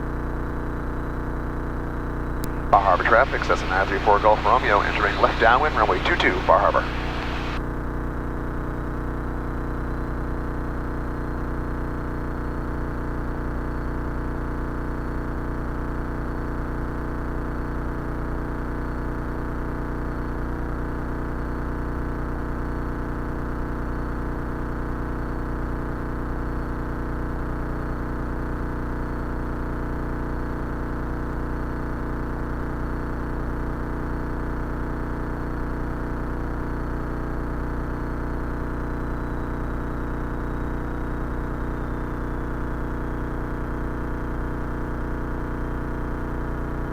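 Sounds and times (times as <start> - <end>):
airplane engine and propeller droning: 2.5 - 7.6.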